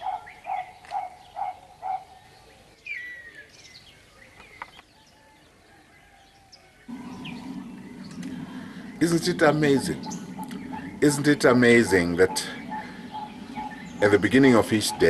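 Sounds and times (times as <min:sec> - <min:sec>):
bird short low notes: 0:06.9 - 0:15.0
high bird chirps: 0:06.9 - 0:15.0.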